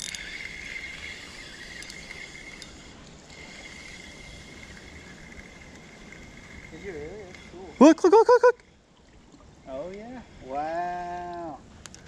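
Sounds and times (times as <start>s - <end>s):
insects trilling: 0.0s - 8.8s.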